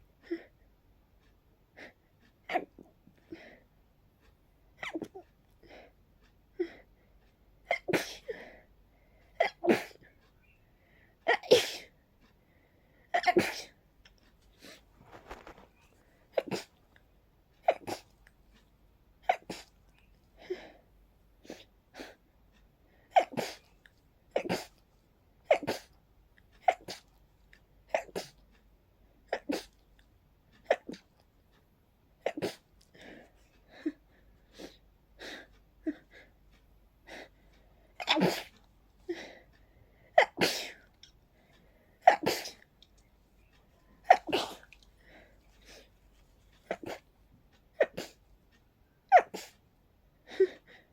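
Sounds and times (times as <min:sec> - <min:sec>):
person sneezing: 0:44.1 - 0:44.7.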